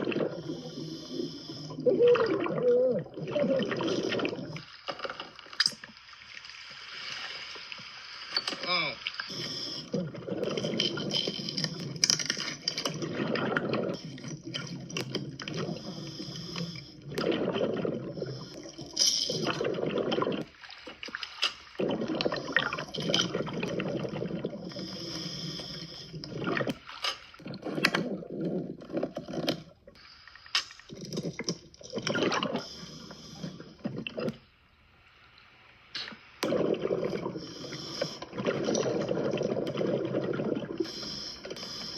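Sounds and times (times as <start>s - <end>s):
bubbling exhaled air: 0.0s - 5.4s, 8.7s - 34.5s, 36.0s - 41.9s
regulator hissing inhale: 9.2s - 10.0s, 15.7s - 17.0s, 24.7s - 26.2s, 32.6s - 33.8s, 37.4s - 38.3s, 40.8s - 41.9s.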